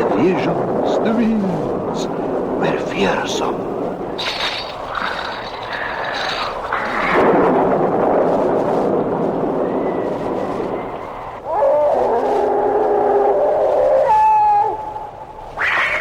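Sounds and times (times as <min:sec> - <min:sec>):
rushing wind-like noise: 0:00.0 - 0:16.0
wavering animal-like howl: 0:11.4 - 0:16.0.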